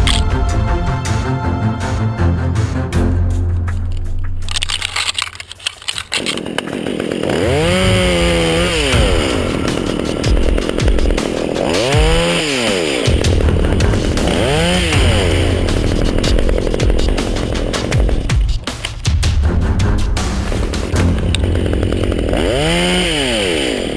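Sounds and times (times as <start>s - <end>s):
chainsaw revving: 4.9s - 19.1s, 20.2s - 23.9s.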